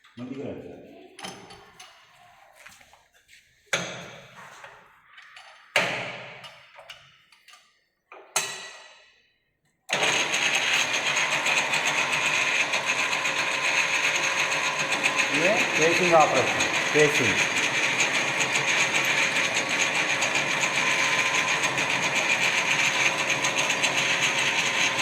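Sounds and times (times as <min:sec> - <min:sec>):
metal lathe whirring: 0:09.9 - 0:25.0.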